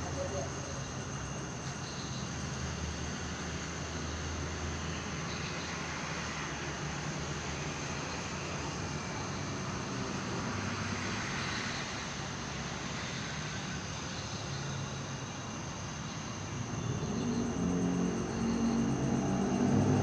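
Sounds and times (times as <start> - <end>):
distant city traffic rumble: 0.0 - 20.0
low engine drone: 11.4 - 20.0.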